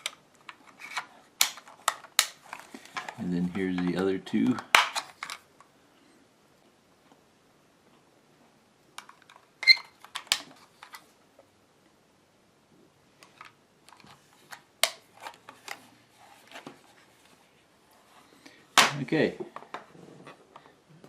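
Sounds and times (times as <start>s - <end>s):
plastic clicks and snaps: 0.0s - 3.2s.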